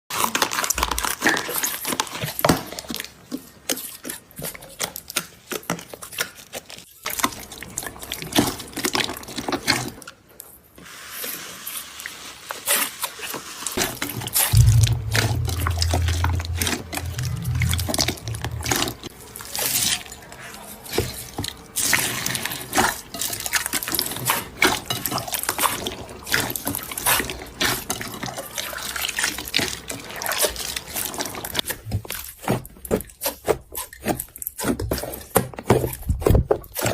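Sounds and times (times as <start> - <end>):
low hum: 14.6 - 19.1.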